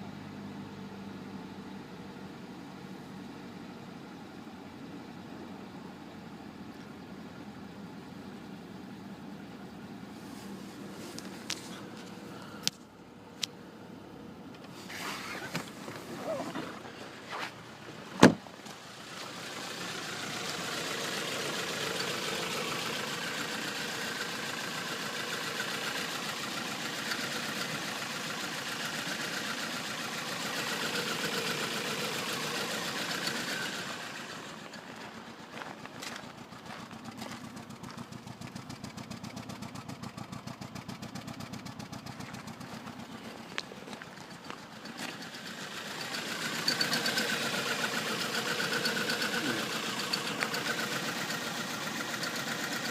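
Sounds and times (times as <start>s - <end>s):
engine idle with rapid pulsing: 0.0s - 52.9s
car engine running: 0.1s - 52.9s.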